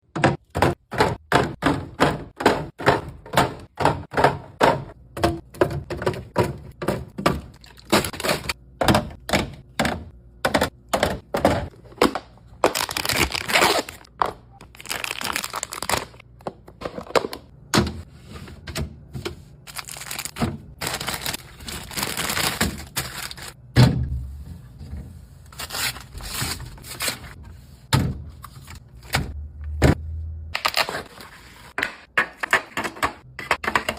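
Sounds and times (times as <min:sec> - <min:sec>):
plastic packaging crinkling: 0:12.7 - 0:14.0, 0:14.7 - 0:16.2, 0:19.7 - 0:23.6.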